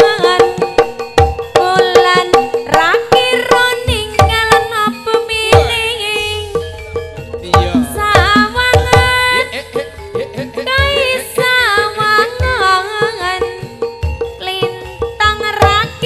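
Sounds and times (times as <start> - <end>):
gamelan music: 0.0 - 16.0
hand drum strokes: 7.2 - 9.4.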